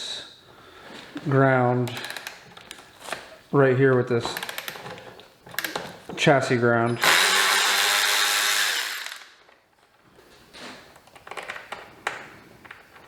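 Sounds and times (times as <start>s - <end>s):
power tool motor running: 7.0s - 9.3s.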